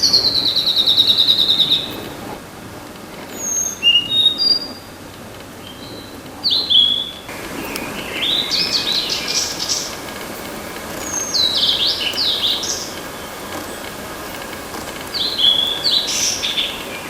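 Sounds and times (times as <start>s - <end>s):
bird singing whistled notes: 0.0s - 2.0s, 3.4s - 4.9s, 5.6s - 10.0s, 10.9s - 13.8s, 15.1s - 17.0s.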